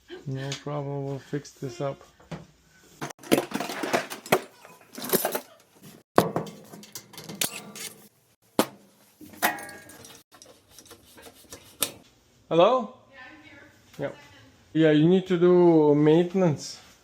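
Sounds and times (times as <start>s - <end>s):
tools and metal panels knocking: 6.2s - 7.5s.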